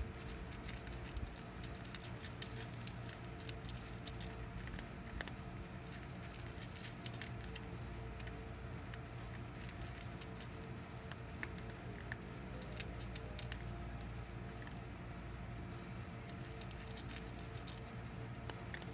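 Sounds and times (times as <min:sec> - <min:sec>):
low background hum: 0:00.0 - 0:18.9.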